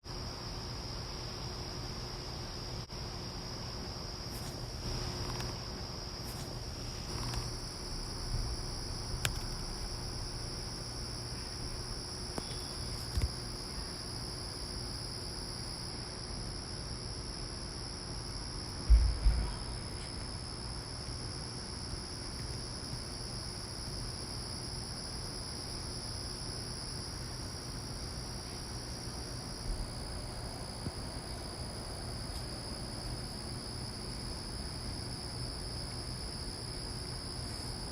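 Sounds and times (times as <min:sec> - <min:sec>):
insect chorus trilling: 0:00.1 - 0:37.9
low thumps: 0:18.9 - 0:19.9.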